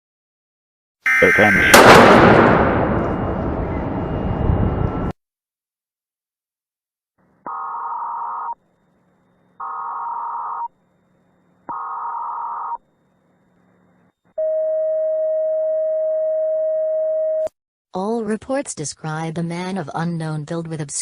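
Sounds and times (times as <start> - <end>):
data tone bursts: 1.1 - 1.8
steady alert tone: 1.1 - 5.1.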